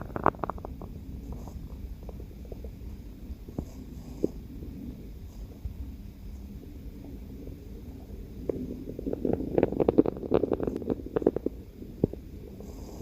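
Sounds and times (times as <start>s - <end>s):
stomach growling: 0.0s - 2.9s, 6.9s - 13.0s.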